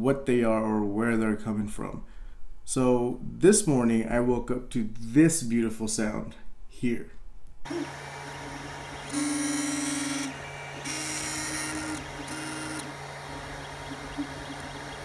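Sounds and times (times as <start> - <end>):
fan hum: 7.5 - 15.0
motors buzzing and whining: 7.6 - 15.0.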